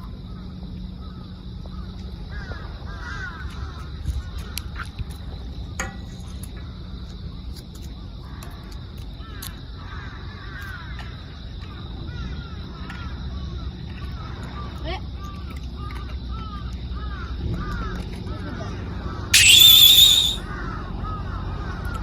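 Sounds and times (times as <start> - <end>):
birds calling: 19.4 - 20.4.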